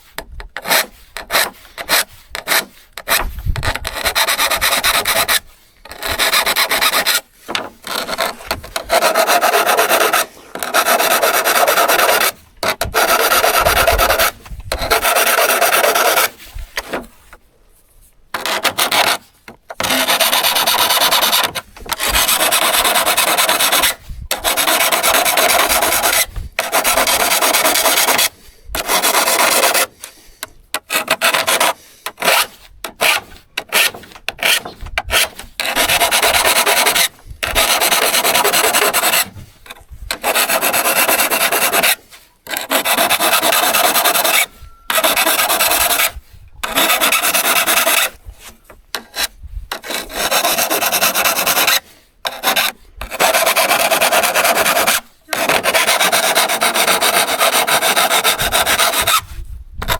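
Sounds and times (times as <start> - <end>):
hand strokes scraping steel saw: 0.0 - 59.9.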